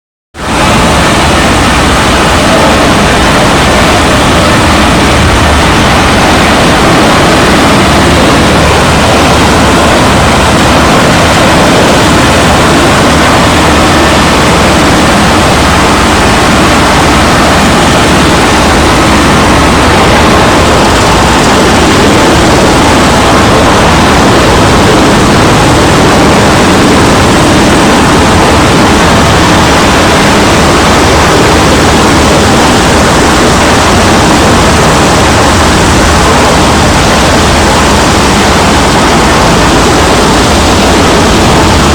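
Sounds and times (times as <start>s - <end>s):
wood chipper running: 0.4s - 41.9s.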